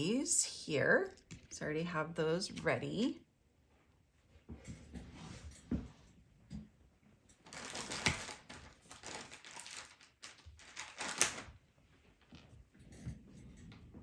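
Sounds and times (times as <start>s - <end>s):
paper and card rustling: 7.5s - 11.5s.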